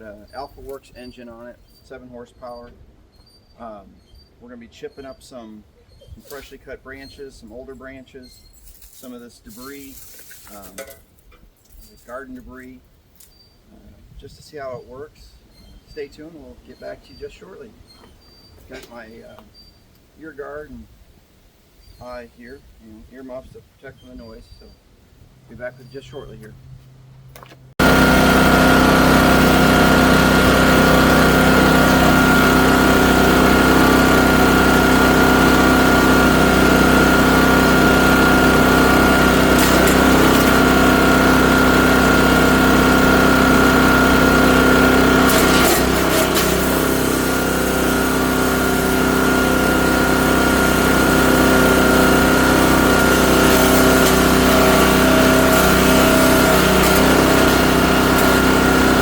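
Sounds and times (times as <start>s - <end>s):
chipper shredder engine running: 8.7s - 10.9s, 27.3s - 59.0s.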